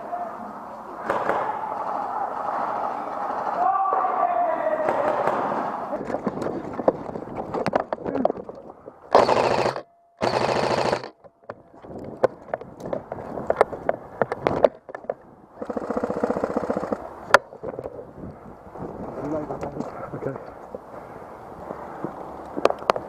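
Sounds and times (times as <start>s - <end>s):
airsoft guns firing bursts: 9.1s - 11.2s, 15.6s - 17.0s.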